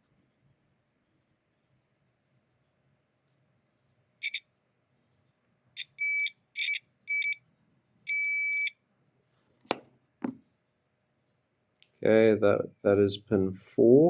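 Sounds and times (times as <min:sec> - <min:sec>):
multimeter beeping: 0:04.2 - 0:04.5, 0:05.8 - 0:07.4, 0:08.1 - 0:08.8.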